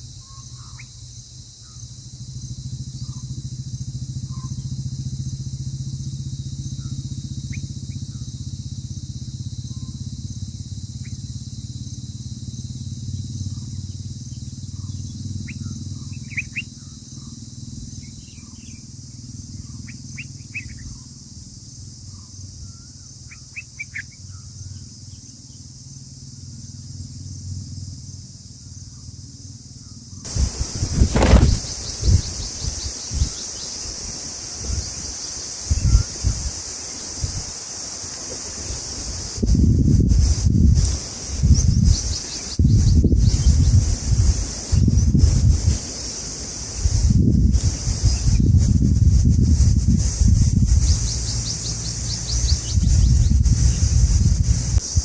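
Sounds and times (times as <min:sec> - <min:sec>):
high-pitched insect drone: 0:00.0 - 0:55.0
bird chirps: 0:13.6 - 0:17.4, 0:50.8 - 0:53.7
rustling and thumping near microphone: 0:30.3 - 0:33.5.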